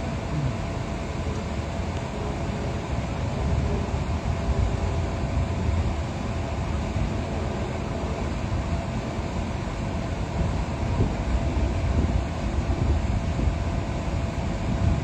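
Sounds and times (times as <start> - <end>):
engine rumbling: 0.0 - 10.8
faint steady tones: 0.0 - 10.9.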